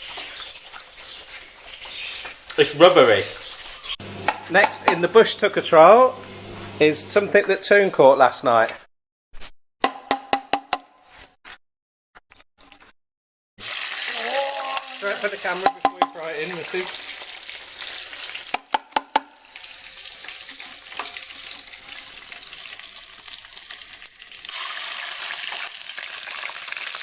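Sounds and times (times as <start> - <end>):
insects sizzling in a hot pan: 0.0 - 5.1, 13.6 - 27.0
person speaking: 4.4 - 8.8, 14.0 - 17.0
utensil clicking on a pan: 15.6 - 16.2, 20.2 - 21.6.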